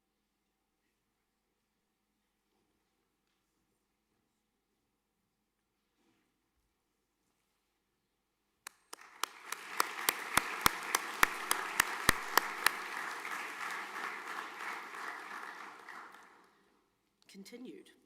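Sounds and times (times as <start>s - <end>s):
audience applause: 8.7s - 16.6s
loud evenly spaced claps: 8.7s - 16.7s.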